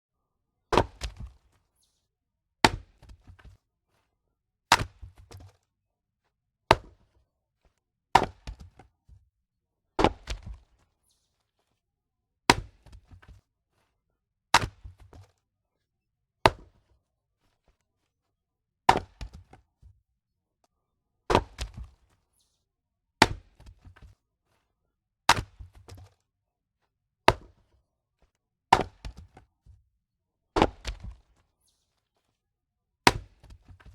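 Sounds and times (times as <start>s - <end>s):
axe chopping logs: 0.7s - 1.3s, 4.7s - 5.5s, 8.2s - 8.8s, 10.0s - 10.6s, 12.5s - 13.0s, 14.6s - 15.0s, 18.9s - 19.6s, 21.3s - 21.9s, 23.2s - 24.0s, 25.3s - 26.1s, 27.3s - 27.5s, 28.7s - 29.4s, 30.6s - 31.2s, 33.1s - 33.8s.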